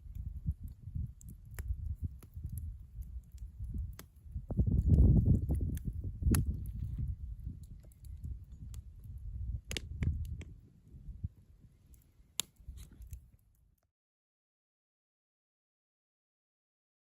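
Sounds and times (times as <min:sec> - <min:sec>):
sharp clicks and crackles: 0:00.0 - 0:10.6, 0:11.9 - 0:13.6.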